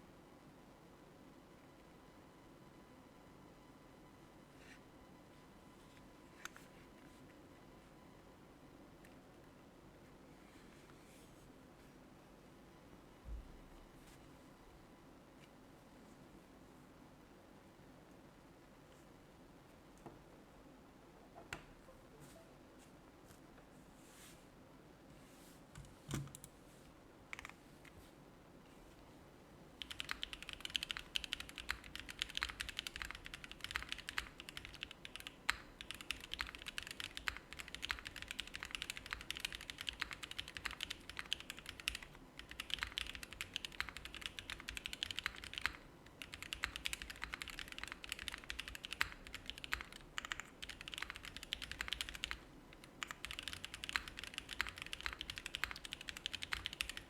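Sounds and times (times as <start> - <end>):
faint background buzz: 0.0 - 57.0
mechanical keyboard typing: 29.8 - 57.0.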